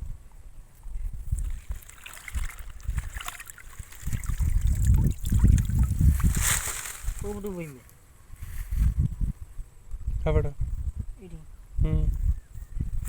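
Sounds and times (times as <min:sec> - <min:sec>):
low rumbles on microphone: 0:00.0 - 0:07.5, 0:08.4 - 0:13.0
water sloshing and splashing: 0:01.3 - 0:07.3.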